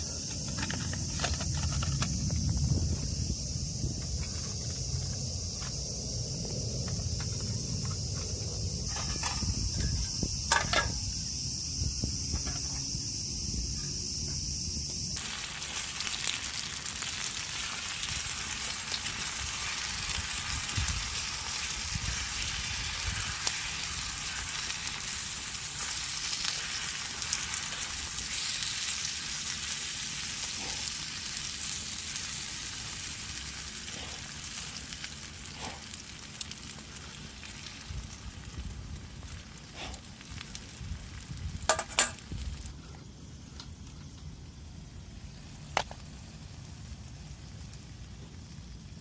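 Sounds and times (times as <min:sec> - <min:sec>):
food sizzling in a hot pan: 0:15.1 - 0:42.6.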